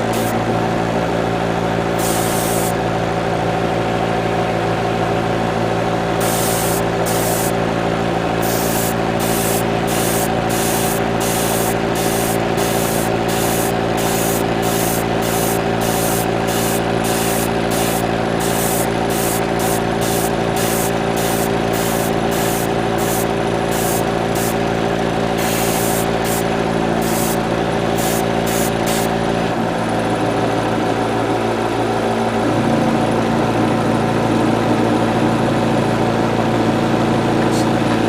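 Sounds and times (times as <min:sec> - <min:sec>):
airbrush spraying hissing bursts: 0:00.0 - 0:00.4, 0:02.0 - 0:02.8, 0:06.2 - 0:07.6, 0:08.4 - 0:24.6, 0:25.4 - 0:27.4, 0:28.0 - 0:29.1
airbrush compressor humming: 0:00.0 - 0:00.6, 0:01.9 - 0:02.8, 0:06.2 - 0:07.7, 0:08.3 - 0:30.4.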